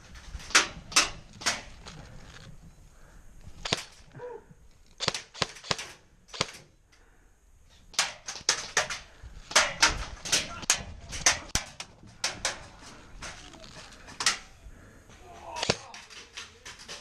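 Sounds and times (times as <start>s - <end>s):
airsoft guns firing: 3.6s - 4.0s, 5.0s - 6.7s, 7.9s - 12.7s, 15.3s - 17.0s.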